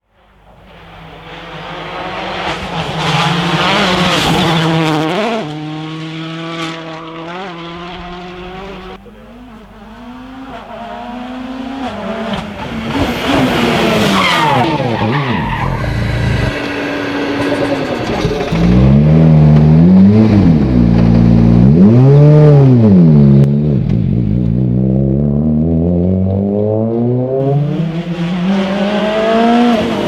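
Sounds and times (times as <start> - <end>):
rally car engine revving: 0.5 - 30.0
tyre squeal: 10.4 - 16.0.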